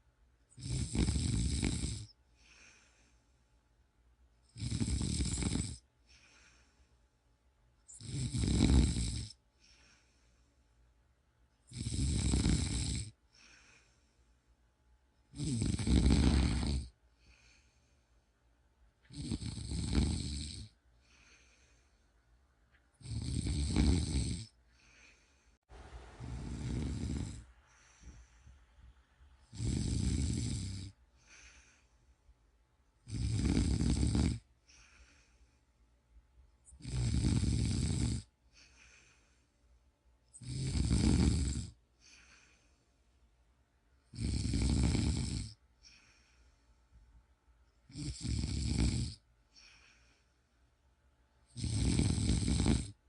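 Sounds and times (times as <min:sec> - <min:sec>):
person snoring: 0:00.5 - 0:03.0, 0:04.5 - 0:06.7, 0:07.9 - 0:10.1, 0:11.7 - 0:14.0, 0:15.3 - 0:17.7, 0:19.1 - 0:21.8, 0:23.0 - 0:25.3, 0:26.1 - 0:28.4, 0:29.4 - 0:31.9, 0:33.0 - 0:35.4, 0:36.7 - 0:39.2, 0:40.3 - 0:42.6, 0:44.1 - 0:46.3, 0:47.9 - 0:50.1, 0:51.5 - 0:53.0
faint breath: 0:02.3 - 0:03.7, 0:06.0 - 0:07.3, 0:09.5 - 0:11.0, 0:13.2 - 0:14.6, 0:16.2 - 0:18.5, 0:20.9 - 0:22.4, 0:24.6 - 0:29.5, 0:30.9 - 0:32.4, 0:34.6 - 0:35.9, 0:38.4 - 0:40.0, 0:41.9 - 0:43.3, 0:45.7 - 0:47.1, 0:49.4 - 0:50.8.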